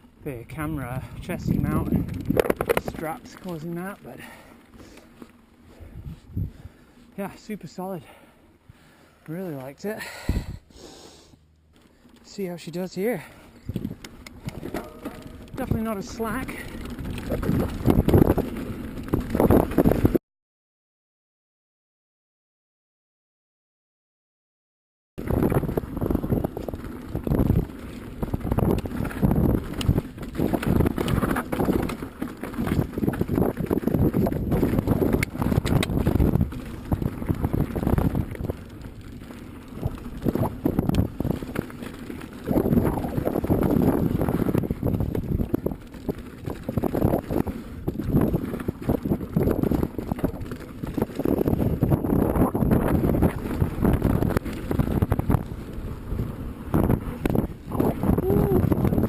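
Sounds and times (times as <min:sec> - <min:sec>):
wind buffeting microphone: 0:00.4 - 0:03.1, 0:05.7 - 0:06.8, 0:13.6 - 0:20.2, 0:25.2 - 0:59.0
tyres rumbling on dirt: 0:00.4 - 0:05.6, 0:11.7 - 0:20.2, 0:25.2 - 0:59.0
bike rattling and knocking: 0:00.5 - 0:05.3, 0:11.7 - 0:20.2, 0:25.2 - 0:59.0.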